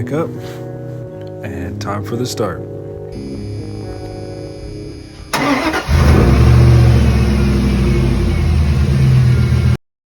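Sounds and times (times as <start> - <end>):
guitar music: 0.0 - 9.5
car engine running: 3.2 - 9.8
starter cranking: 5.3 - 6.5.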